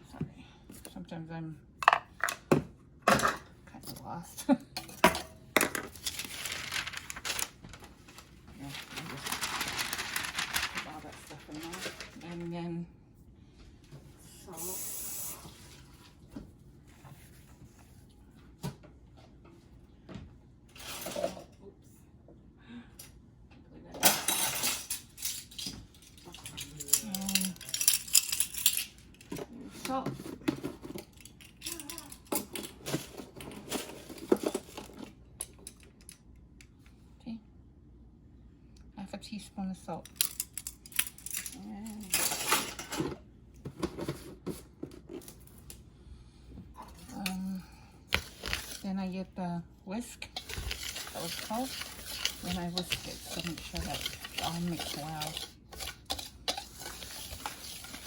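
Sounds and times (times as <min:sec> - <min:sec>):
loud rustling: 0:06.0 - 0:07.5, 0:08.6 - 0:12.2
scraping rustle: 0:06.0 - 0:12.3, 0:50.4 - 0:58.0.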